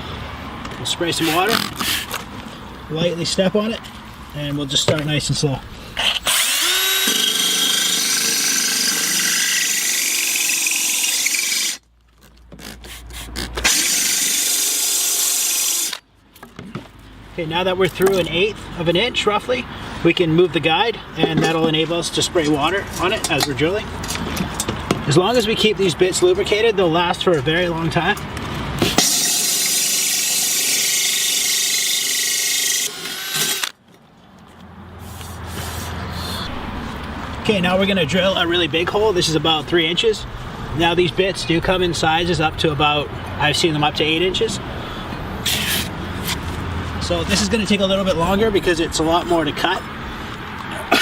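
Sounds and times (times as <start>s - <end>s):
drill grinding into tile: 6.0s - 11.8s, 13.6s - 16.0s, 29.0s - 33.7s.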